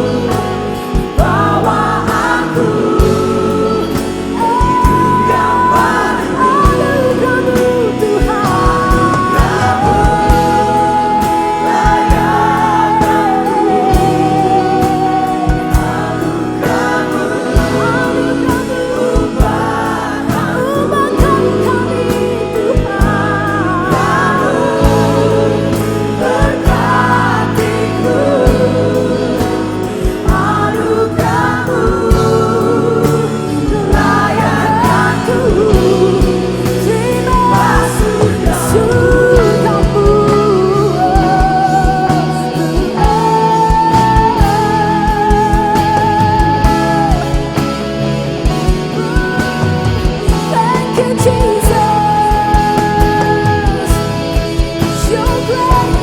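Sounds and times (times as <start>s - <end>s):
worship song with choir and band: 0.0s - 56.0s.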